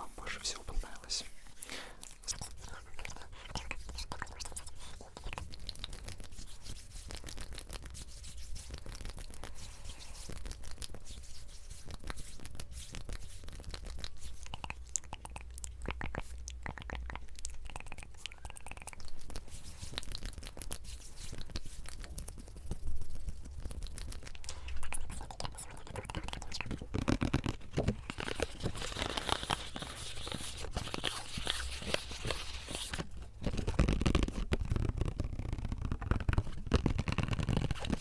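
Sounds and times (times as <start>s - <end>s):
objects crackling and scratching: 0.0s - 38.0s.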